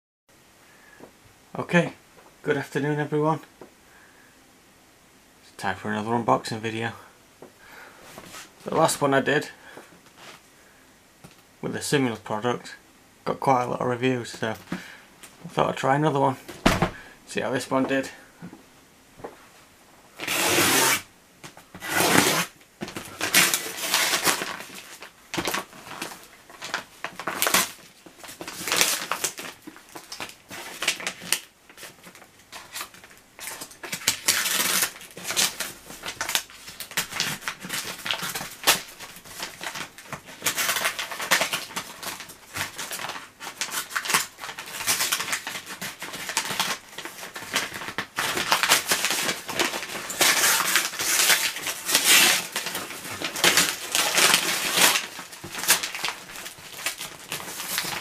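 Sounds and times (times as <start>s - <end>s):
packaging tearing and crinkling: 20.2s - 21.1s, 21.8s - 58.0s.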